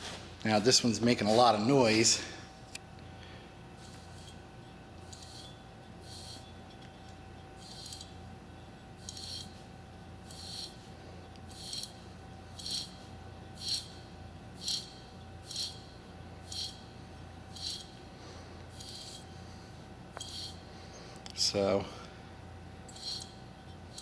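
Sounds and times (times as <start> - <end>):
wheel bearing grinding rasp: 3.8 - 8.2, 9.0 - 12.0, 12.6 - 13.9, 18.7 - 19.3, 20.2 - 20.6, 22.9 - 24.0.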